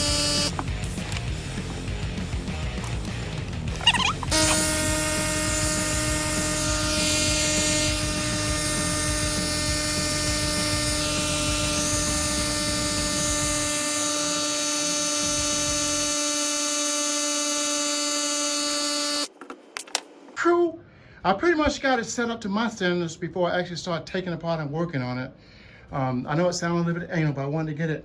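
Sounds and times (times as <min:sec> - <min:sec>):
air compressor motor humming: 0:00.0 - 0:19.3.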